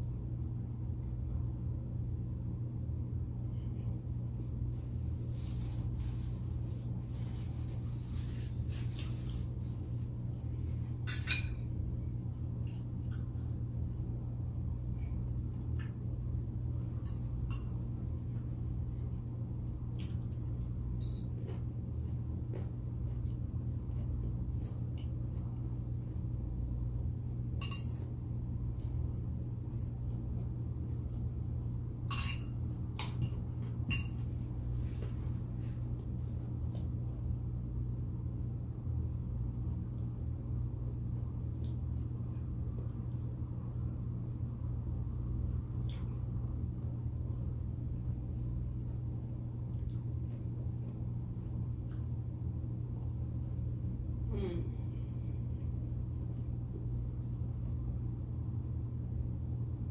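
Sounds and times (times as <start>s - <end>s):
steady low hum: 0.0s - 59.9s
cutlery clinking on a plate: 11.1s - 11.6s, 27.6s - 28.1s, 32.1s - 34.3s.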